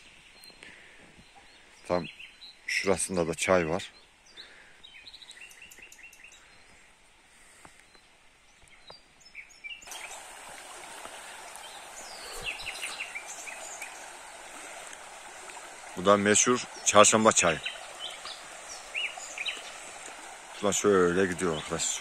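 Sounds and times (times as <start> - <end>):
small birds chirping: 0.0 - 22.0
stream water rushing: 9.8 - 22.0.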